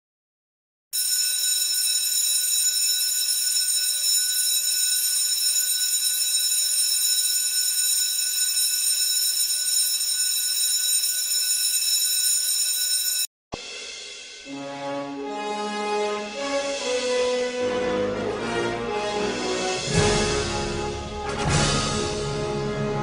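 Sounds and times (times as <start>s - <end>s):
school bell ringing: 1.0s - 13.3s.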